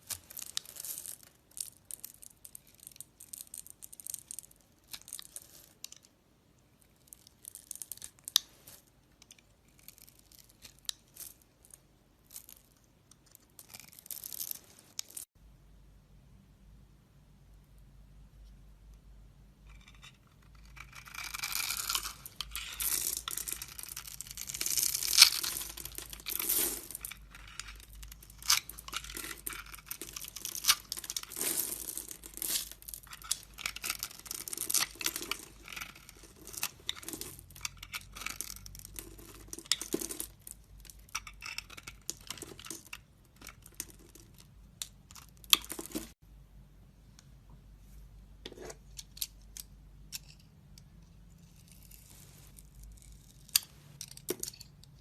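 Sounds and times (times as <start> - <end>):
knife scraping soap: 19.7 - 39.8, 40.9 - 43.7
soap crackling and clicking: 20.6 - 31.6.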